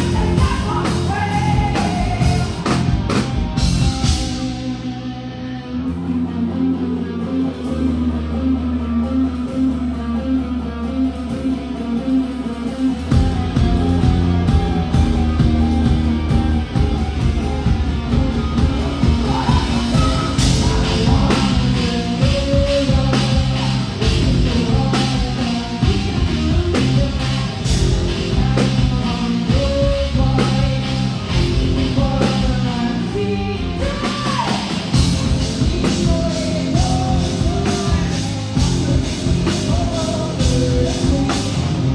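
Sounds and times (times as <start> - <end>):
drums and bass: 0.0 - 41.9
electric guitar riff: 0.0 - 41.9.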